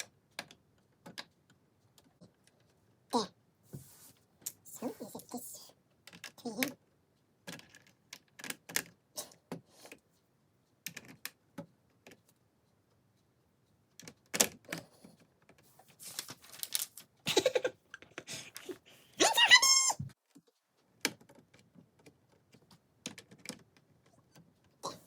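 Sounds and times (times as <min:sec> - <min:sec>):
plastic bricks clicking together: 0:06.1 - 0:06.4, 0:07.4 - 0:09.0, 0:23.0 - 0:23.9
plastic pieces rattling: 0:16.0 - 0:17.0.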